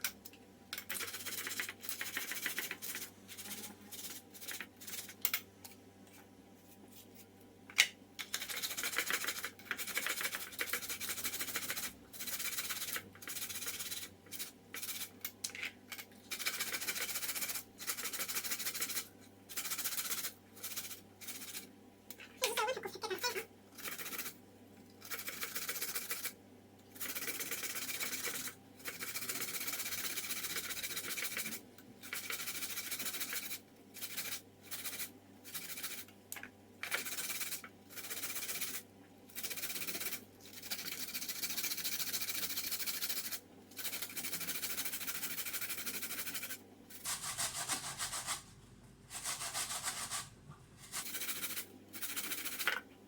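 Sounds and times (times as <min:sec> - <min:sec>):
vegetables rasping on a grater: 0:22.5 - 0:24.4, 0:36.9 - 0:48.5.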